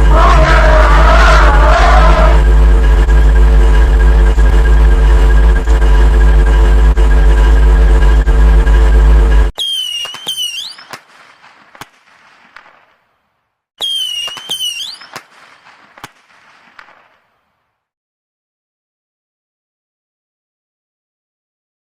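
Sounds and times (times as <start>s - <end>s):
distorted bass-heavy blast: 0.0s - 9.5s
firework whistle: 9.6s - 12.8s, 13.8s - 17.0s
firework crackling pops: 9.6s - 13.2s, 13.8s - 17.4s.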